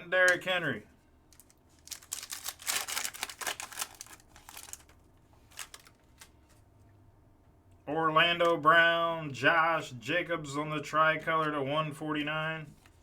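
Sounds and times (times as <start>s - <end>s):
cards clicking and rustling: 1.3s - 6.6s.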